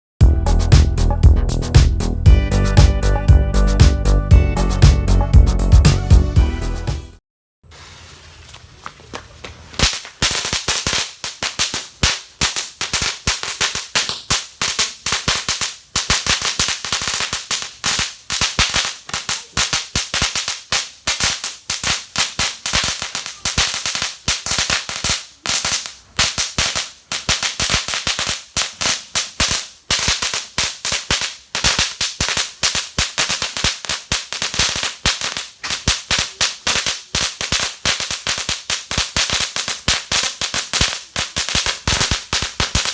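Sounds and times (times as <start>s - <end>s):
firecrackers crackling bangs: 9.1s - 42.9s.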